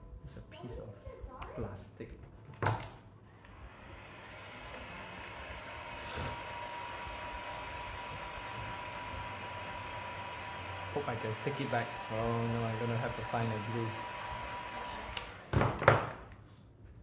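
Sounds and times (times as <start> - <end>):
hot-air blower running: 2.7 - 16.1.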